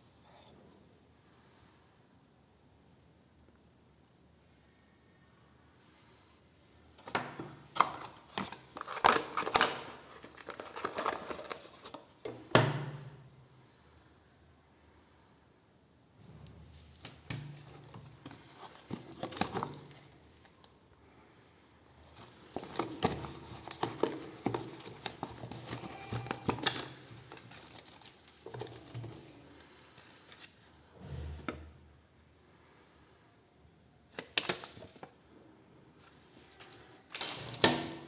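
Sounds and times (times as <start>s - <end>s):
packaging crinkling and rustling: 7.0s - 12.5s, 16.8s - 20.7s, 22.0s - 30.8s, 36.0s - 38.0s.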